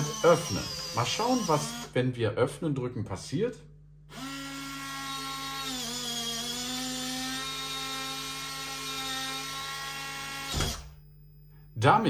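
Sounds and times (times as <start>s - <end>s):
electric lock motor whirring: 0.0s - 1.9s, 4.1s - 11.0s.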